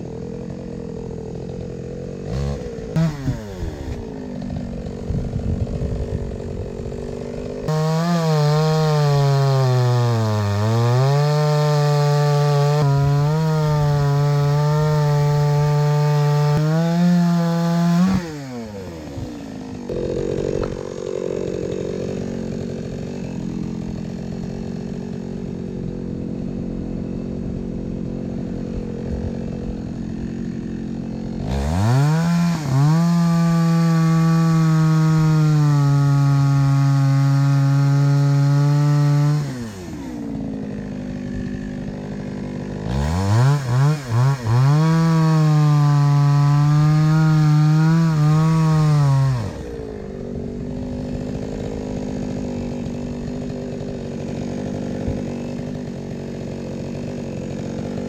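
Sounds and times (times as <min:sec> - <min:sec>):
chainsaw revving and idling: 0:00.0 - 0:58.0.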